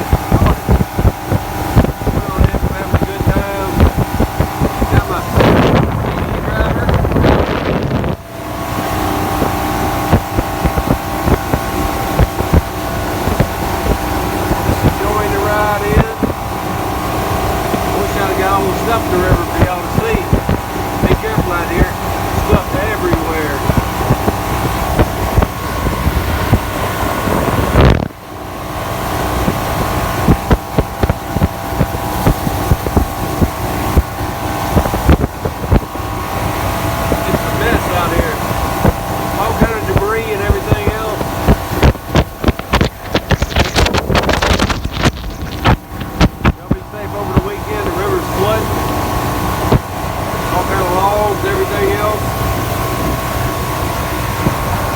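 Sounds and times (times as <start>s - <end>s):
motorboat engine running: 0.0s - 54.9s
wind on microphone: 0.0s - 54.9s
sharp thumps: 29.4s - 50.0s.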